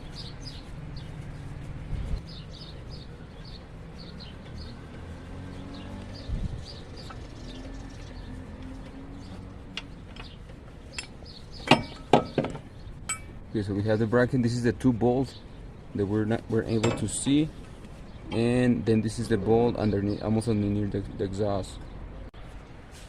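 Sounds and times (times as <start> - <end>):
birds chirping: 0.0 - 22.6
sharp metallic clinks: 9.7 - 13.4.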